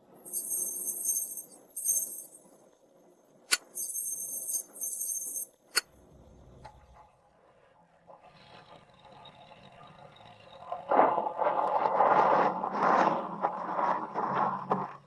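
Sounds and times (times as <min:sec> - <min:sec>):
high metallic jingling: 0:00.1 - 0:02.6, 0:03.6 - 0:05.8
sharp clicks: 0:03.5 - 0:05.9.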